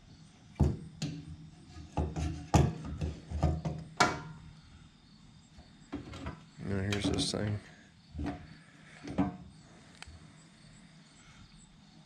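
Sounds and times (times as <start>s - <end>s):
metal knocks and clunks: 0.6s - 4.4s, 5.9s - 7.4s, 8.2s - 9.5s.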